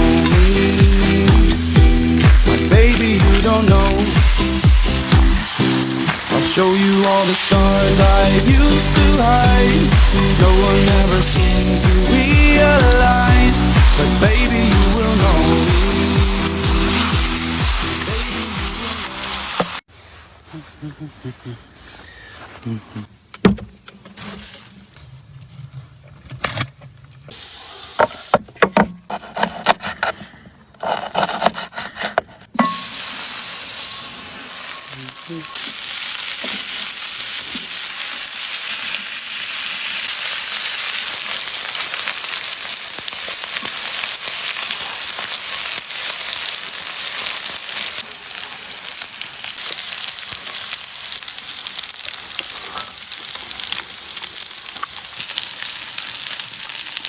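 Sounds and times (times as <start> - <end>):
food frying in hot oil: 0.0 - 19.8, 32.8 - 57.0.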